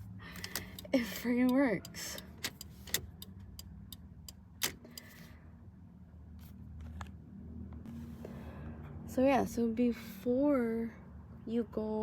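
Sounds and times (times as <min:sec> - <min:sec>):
turn signal clicking: 0:00.4 - 0:05.1.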